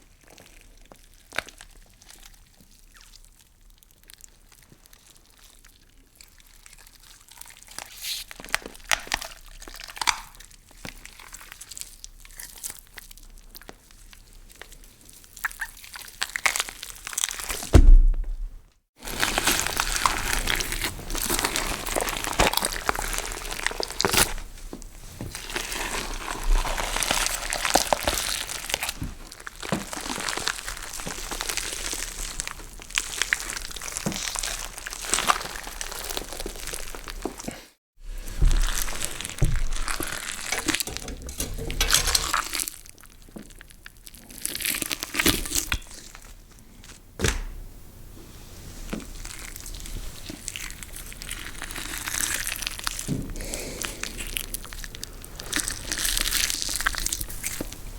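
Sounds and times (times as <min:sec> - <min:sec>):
crunching gore sound effects: 0:19.0 - 0:24.5, 0:25.3 - 0:43.1, 0:49.2 - 0:57.8.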